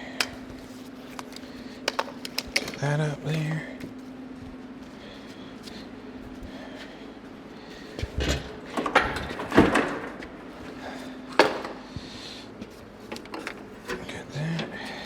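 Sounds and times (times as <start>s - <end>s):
steady low hum: 0.0s - 15.0s
metal clunks and knocks: 8.0s - 10.4s.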